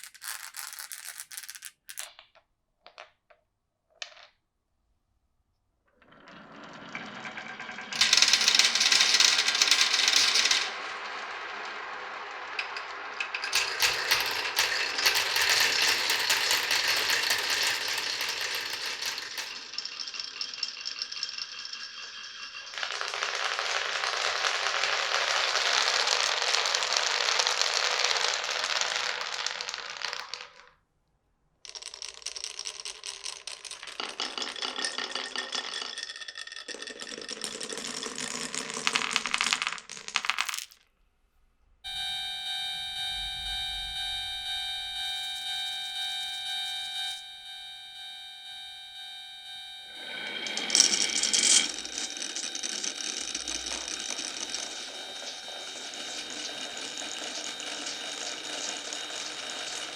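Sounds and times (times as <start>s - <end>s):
marbles rattling down marble run: 0.0s - 3.2s, 6.0s - 30.8s, 31.6s - 40.8s, 49.6s - 59.9s.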